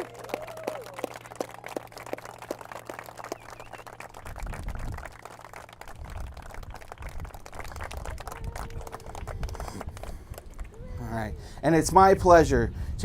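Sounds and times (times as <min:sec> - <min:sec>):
people clapping: 0:00.0 - 0:11.2.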